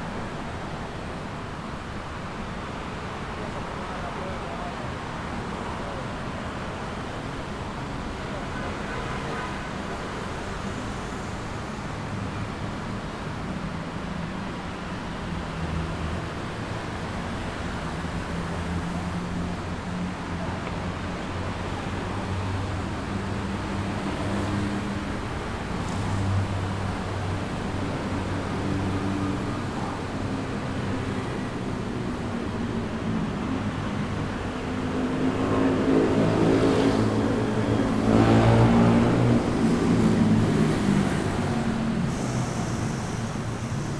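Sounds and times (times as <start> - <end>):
cars and motorbikes passing: 14.8 - 43.9
loud vehicle passing: 33.6 - 43.9.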